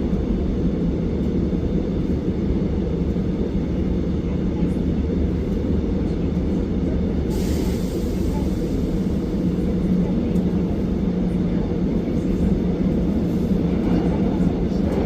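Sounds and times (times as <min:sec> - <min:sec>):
train low rumble and hum: 0:00.0 - 0:15.0
hiss: 0:07.3 - 0:09.1.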